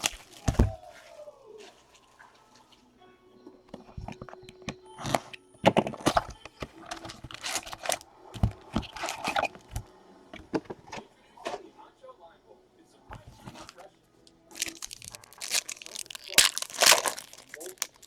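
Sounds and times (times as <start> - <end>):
cardboard packaging tearing: 0.0 - 0.8, 6.9 - 10.6, 14.5 - 18.0.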